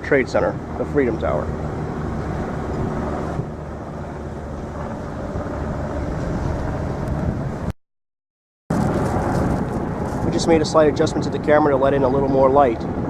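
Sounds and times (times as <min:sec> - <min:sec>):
low outdoor hum: 0:00.0 - 0:07.7
wind buffeting microphone: 0:00.0 - 0:07.7, 0:08.7 - 0:13.0.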